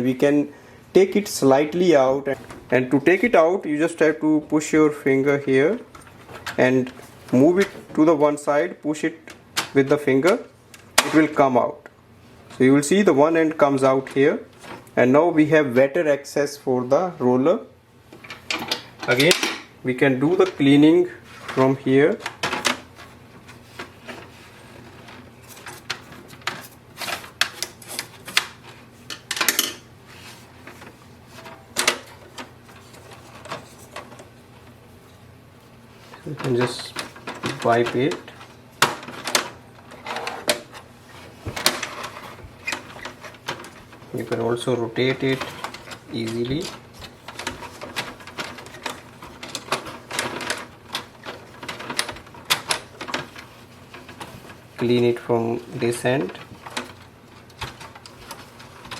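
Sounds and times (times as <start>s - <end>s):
plastic roller clicking: 36.4s - 58.9s.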